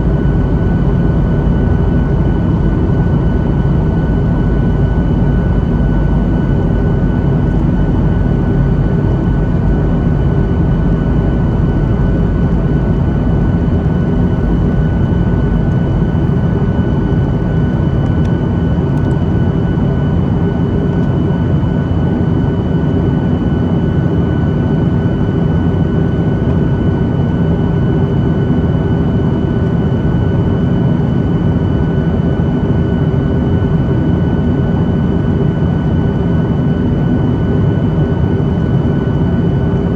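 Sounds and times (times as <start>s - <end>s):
thin steady whine: 0.0s - 21.6s
jet engine drone: 0.0s - 39.9s.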